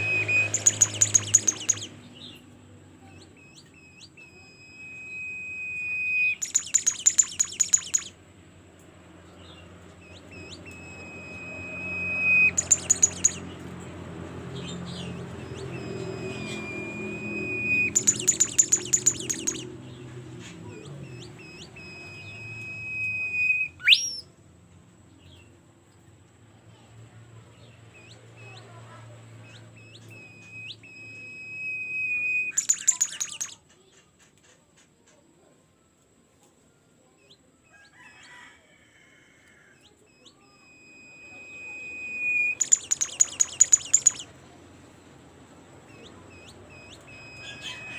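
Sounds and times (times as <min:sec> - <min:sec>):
songbird singing: 0:00.0 - 0:08.2, 0:09.2 - 0:24.4, 0:27.5 - 0:34.1, 0:39.8 - 0:45.0, 0:45.6 - 0:47.9.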